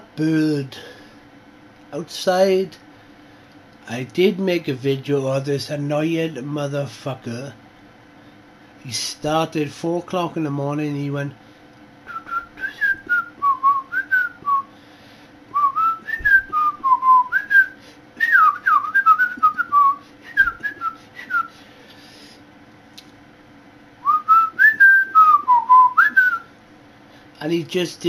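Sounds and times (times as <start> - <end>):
songbird whistled song: 12.1 - 14.6, 15.5 - 21.5, 24.0 - 26.4.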